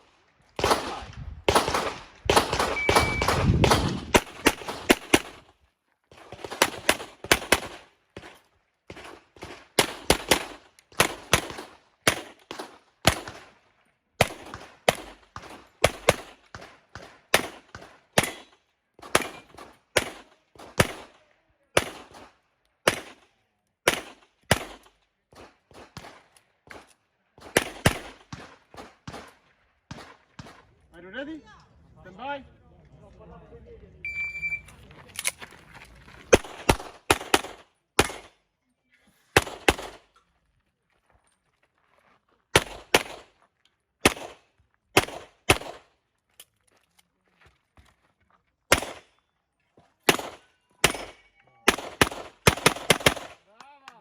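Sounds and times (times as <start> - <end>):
handgun shots: 0.6 - 5.4.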